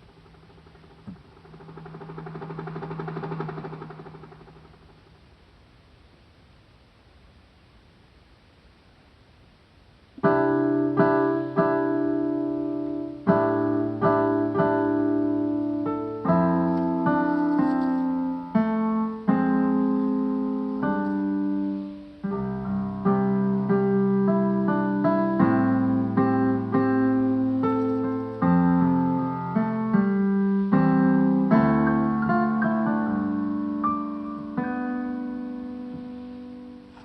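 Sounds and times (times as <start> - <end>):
slow piano chords: 10.2 - 37.0.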